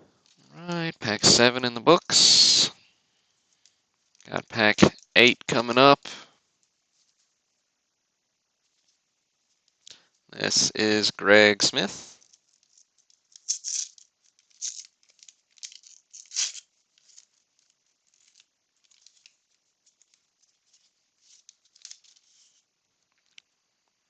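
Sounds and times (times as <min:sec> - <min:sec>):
cards rustling: 0:11.8 - 0:22.6
card pack tearing open: 0:13.3 - 0:22.5.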